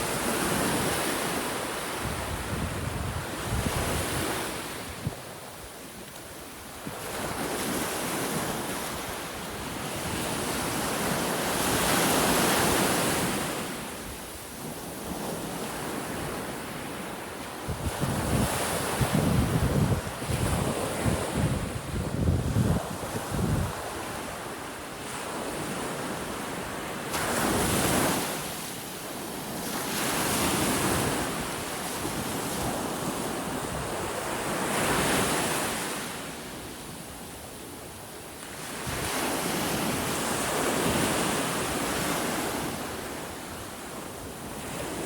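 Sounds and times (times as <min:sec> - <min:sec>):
wind buffeting microphone: 0:02.0 - 0:05.2, 0:17.7 - 0:24.0.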